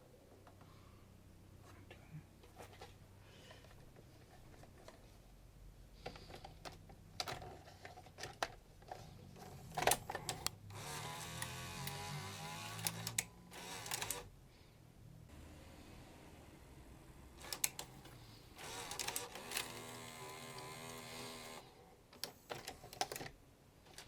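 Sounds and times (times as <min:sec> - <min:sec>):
tape deck mechanism clicking: 0:09.7 - 0:14.3, 0:17.4 - 0:23.3
motor whirring: 0:10.3 - 0:14.3, 0:15.3 - 0:21.7.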